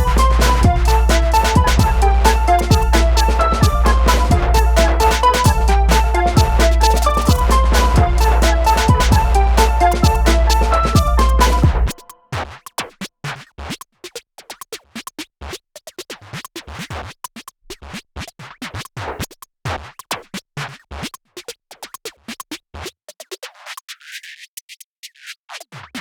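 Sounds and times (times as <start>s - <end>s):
sharp beat hits: 0.0s - 12.1s
electronic music: 0.0s - 12.2s.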